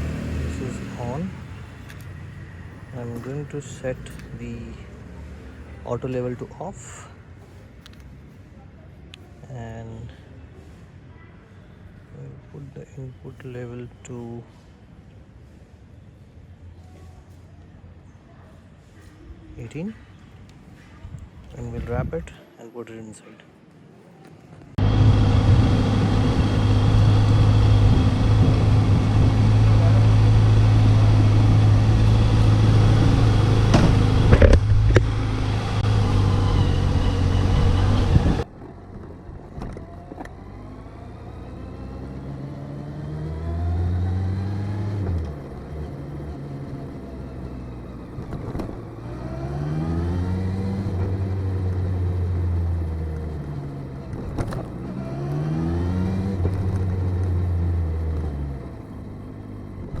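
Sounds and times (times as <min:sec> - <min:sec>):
motorcycle engine running: 0:24.8 - 1:00.0.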